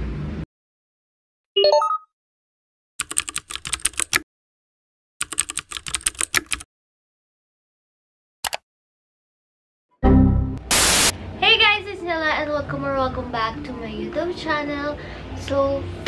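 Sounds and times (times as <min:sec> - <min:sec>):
keyboard typing clicks: 0:03.0 - 0:04.2, 0:05.2 - 0:06.7, 0:08.4 - 0:08.6.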